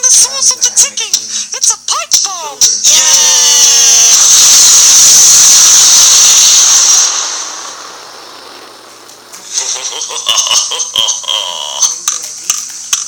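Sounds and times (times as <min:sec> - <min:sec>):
loud static hiss: 0:00.0 - 0:13.0
falling squealing tone: 0:02.8 - 0:09.8.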